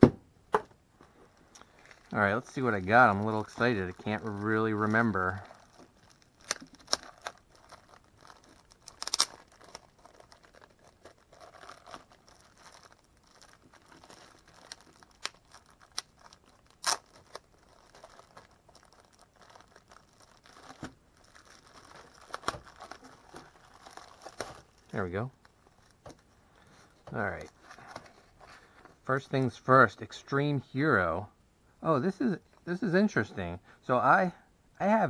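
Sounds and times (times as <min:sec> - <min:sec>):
cardboard crinkling and tearing: 0:01.6 - 0:28.7.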